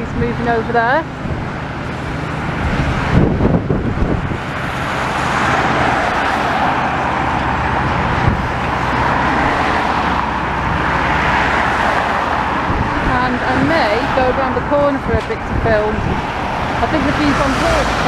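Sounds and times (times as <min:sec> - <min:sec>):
road traffic with engine hum: 0:00.0 - 0:18.0.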